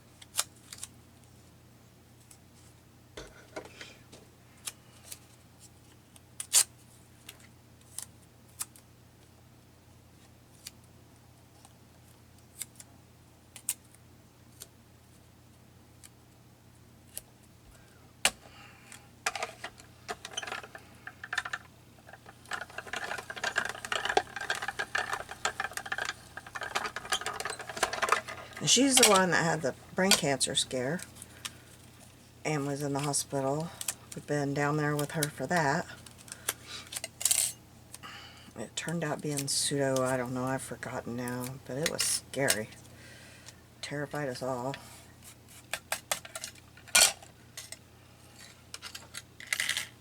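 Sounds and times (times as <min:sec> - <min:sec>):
craft tools tapping and clicking: 0:19.3 - 0:29.2
paper rustling and clattering: 0:19.4 - 0:29.2.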